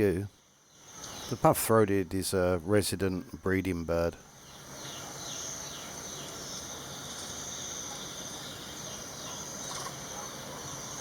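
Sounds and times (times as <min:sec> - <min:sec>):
high-pitched insect drone: 0:04.6 - 0:11.0.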